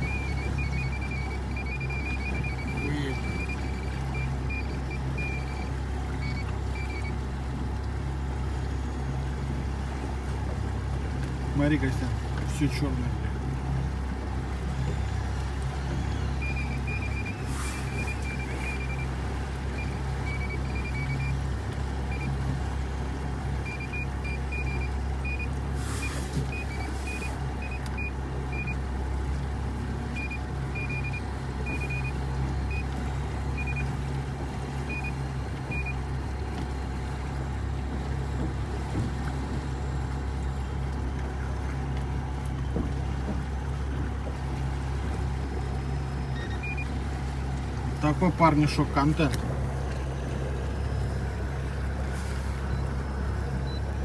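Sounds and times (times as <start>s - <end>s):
high electronic beeps: 0.0s - 7.1s, 16.1s - 19.1s, 19.8s - 21.4s, 30.2s - 32.8s
boat motor running: 0.0s - 54.0s.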